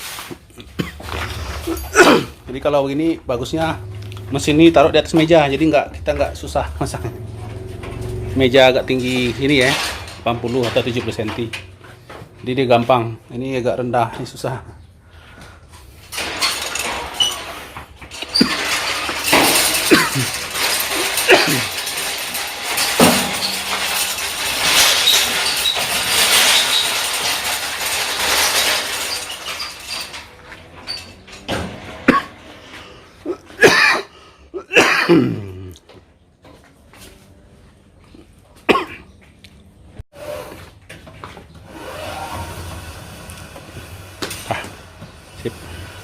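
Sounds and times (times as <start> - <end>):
metal parts rattling and scraping: 0.0 - 33.9, 40.2 - 46.0
short squeaks: 16.2 - 32.4.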